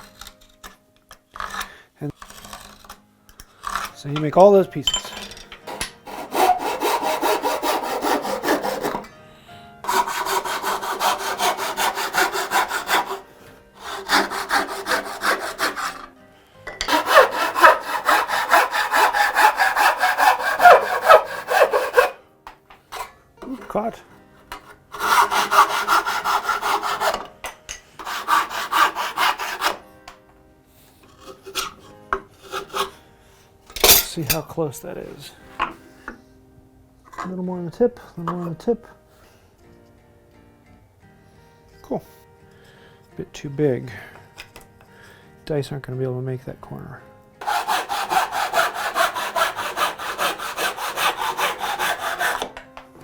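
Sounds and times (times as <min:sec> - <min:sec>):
hand saw cutting wood: 0:01.3 - 0:04.4, 0:05.6 - 0:09.1, 0:09.8 - 0:16.2, 0:16.8 - 0:22.2, 0:22.9 - 0:29.8, 0:31.0 - 0:33.0, 0:47.4 - 0:52.8.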